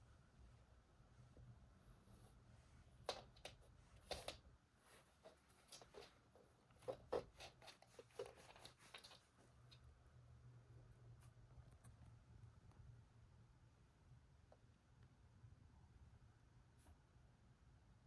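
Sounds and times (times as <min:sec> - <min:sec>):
cat pawing at a toy: 0:03.1 - 0:04.4, 0:05.1 - 0:09.8.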